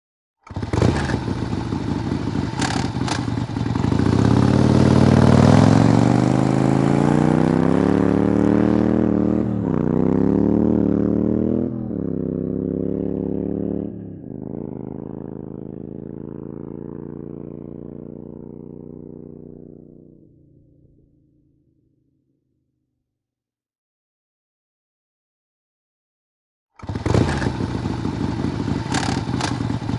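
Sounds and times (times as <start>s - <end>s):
motorcycle engine revving and shifting: 0.4s - 20.5s, 26.8s - 29.9s.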